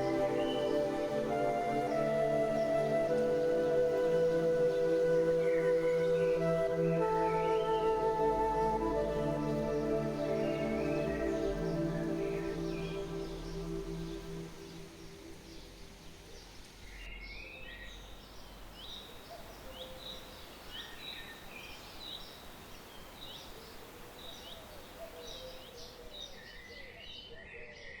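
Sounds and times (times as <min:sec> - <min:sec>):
fainter lower bird calls: 0:00.0 - 0:28.0
small birds chirping: 0:00.0 - 0:28.0
steady outdoor hiss: 0:00.0 - 0:28.0.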